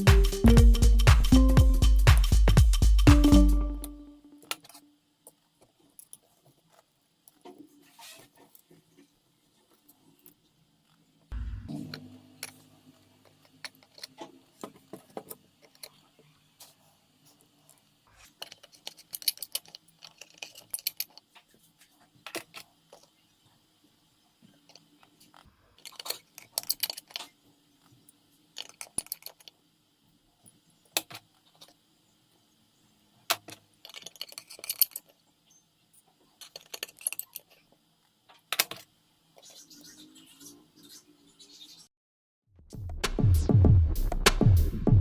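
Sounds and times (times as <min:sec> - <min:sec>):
small tools clicking and tapping: 0:18.4 - 0:21.6, 0:24.4 - 0:28.0, 0:28.6 - 0:29.6, 0:33.3 - 0:35.2, 0:36.0 - 0:38.9.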